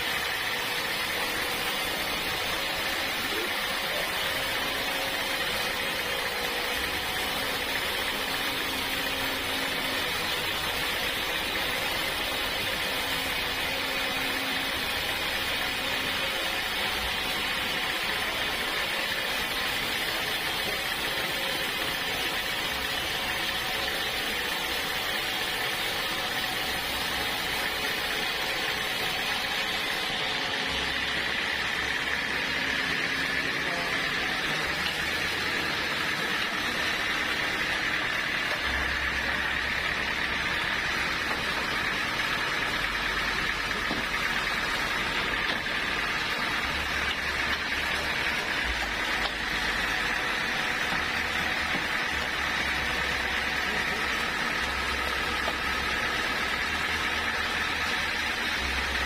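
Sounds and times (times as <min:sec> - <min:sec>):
saw cutting through log: 0:00.0 - 0:59.0.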